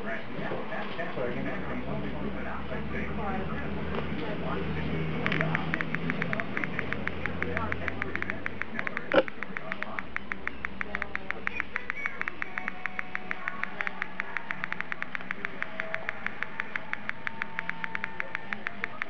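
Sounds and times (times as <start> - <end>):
speaker crackling static: 3.9 - 19.0.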